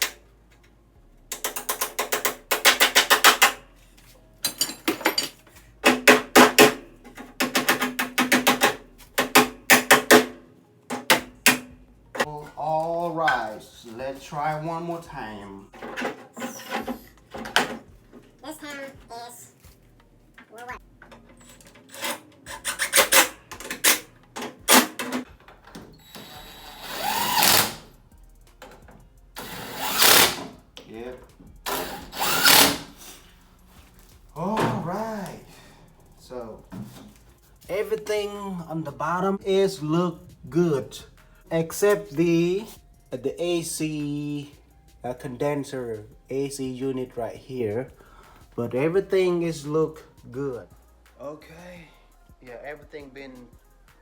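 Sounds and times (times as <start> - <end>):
ratchet wrench clicking: 1.3 - 3.6, 26.2 - 27.9, 29.4 - 30.5, 31.7 - 33.0
metal tools knocking and clanking: 4.4 - 10.3
power tool whirring: 26.0 - 27.9, 29.4 - 30.5, 31.7 - 33.0.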